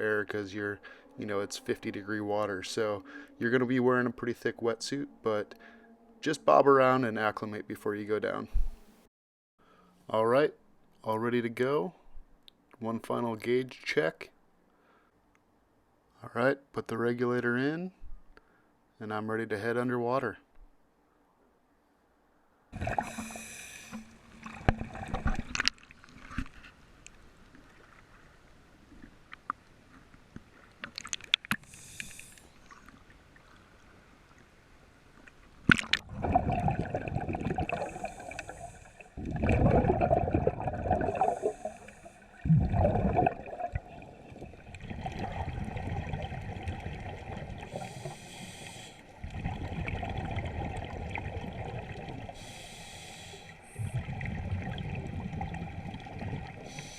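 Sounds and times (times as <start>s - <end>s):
diver breathing through regulator: 22.8s - 24.3s, 31.6s - 32.6s, 37.7s - 39.2s, 41.1s - 42.4s, 47.6s - 49.1s, 52.3s - 54.2s, 56.6s - 56.9s
gurgling exhaled bubbles: 22.8s - 25.6s, 35.7s - 48.3s, 49.2s - 52.4s, 53.7s - 56.9s.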